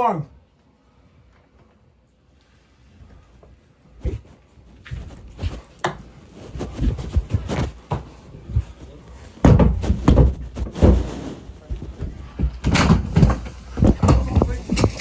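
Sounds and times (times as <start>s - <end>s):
irregular knocks and thumps: 5.0s - 15.0s.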